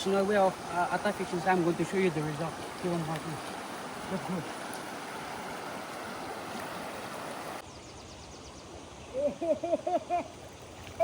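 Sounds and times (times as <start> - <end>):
river water rushing over stones: 0.0 - 7.6.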